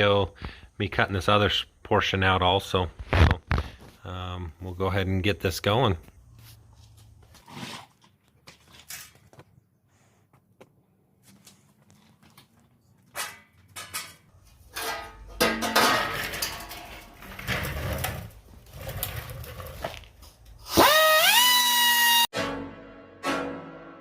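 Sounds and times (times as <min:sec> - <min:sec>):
sheet metal and tools clanking: 0:13.0 - 0:19.4.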